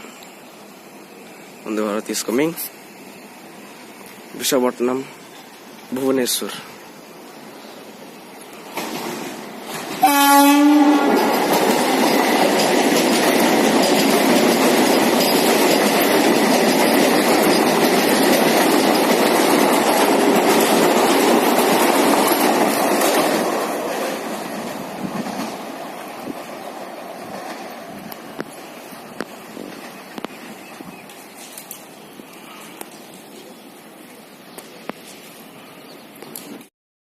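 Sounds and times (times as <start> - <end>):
train wheels rumbling on rail: 0.0 - 36.7
train horn blast: 10.0 - 11.3.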